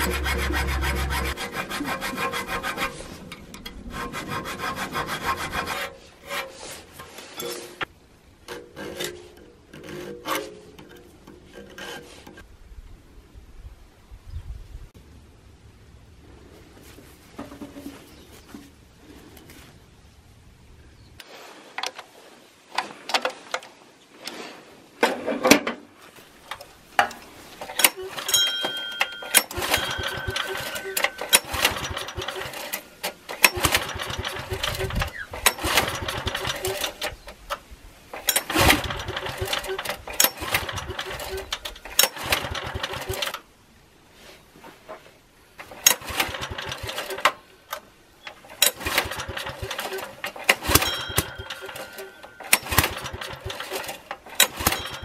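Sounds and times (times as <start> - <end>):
generator engine pull-start cranking: 0.0 - 5.8, 26.4 - 43.4, 45.6 - 55.0
tools knocking and clattering: 6.4 - 7.9, 26.5 - 37.2, 48.3 - 55.0.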